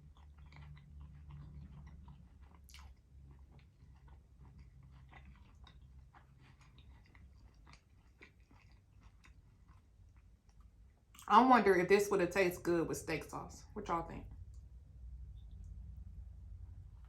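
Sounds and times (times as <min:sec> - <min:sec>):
chewing sandwich: 0:00.0 - 0:11.3
low hum: 0:11.8 - 0:17.0.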